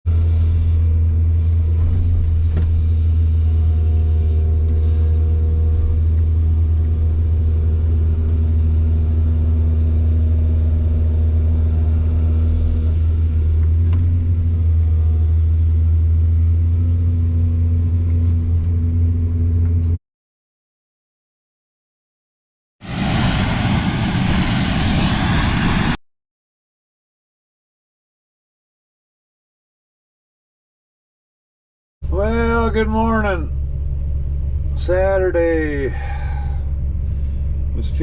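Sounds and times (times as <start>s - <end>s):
excavator diesel engine running: 0.1s - 19.9s, 32.0s - 38.0s.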